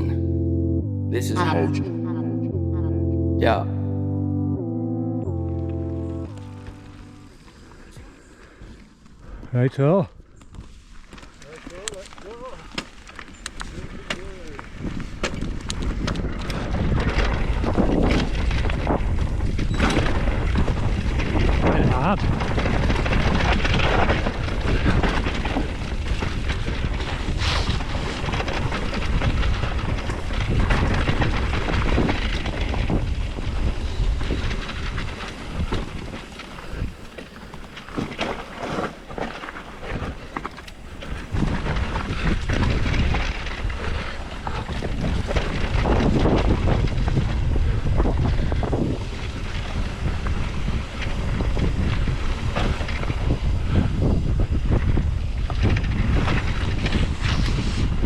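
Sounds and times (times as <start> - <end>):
wind buffeting microphone: 10.4 - 58.0
bike tyre roar: 11.1 - 58.0
bike rattling and knocking: 11.5 - 57.1.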